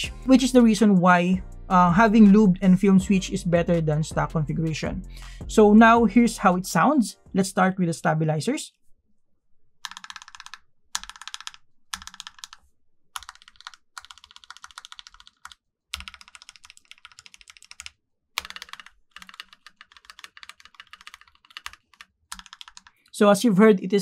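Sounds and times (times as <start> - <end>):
mechanical keyboard keys clacking: 9.8 - 12.6, 13.2 - 22.9.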